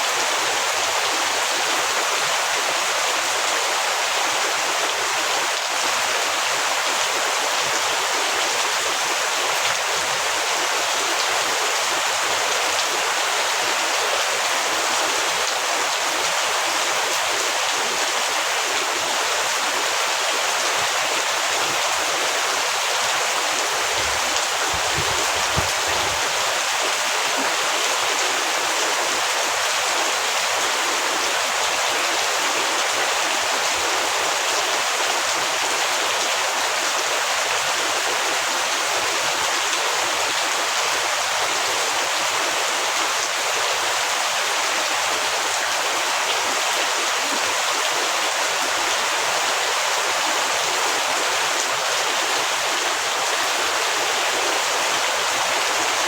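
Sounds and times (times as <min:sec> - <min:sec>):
heavy rain falling: 0:00.1 - 0:56.0.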